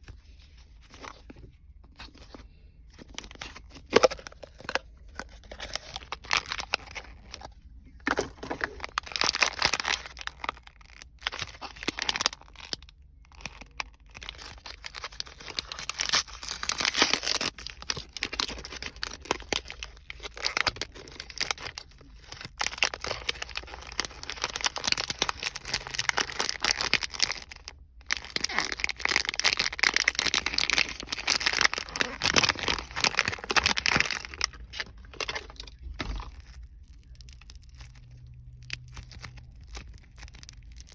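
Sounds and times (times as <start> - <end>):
crackle foam crackling: 0.0 - 40.9.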